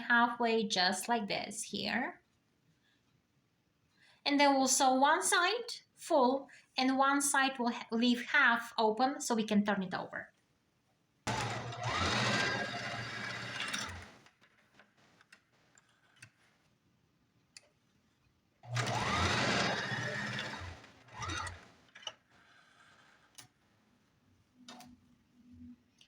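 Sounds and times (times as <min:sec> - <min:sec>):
sewing machine stitching: 0:11.3 - 0:15.4, 0:18.6 - 0:23.1.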